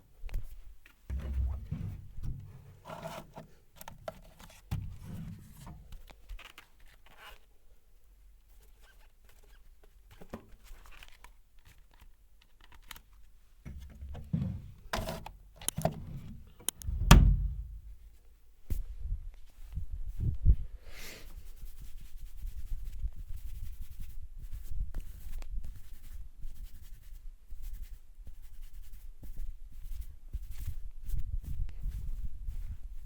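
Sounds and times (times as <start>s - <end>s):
dull thumps: 1.1s - 3.4s, 4.6s - 6.0s, 13.7s - 18.0s.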